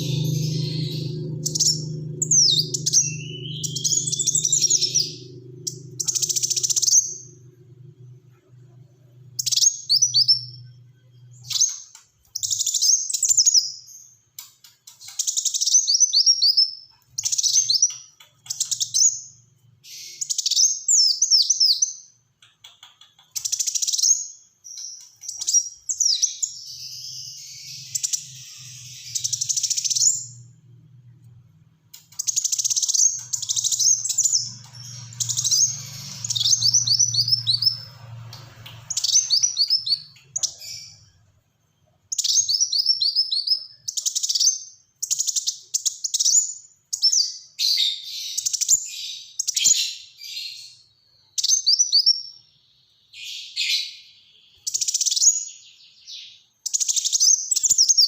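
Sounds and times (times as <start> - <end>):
faint low hum: 0.0 - 44.0
sunbird singing: 0.0 - 58.0.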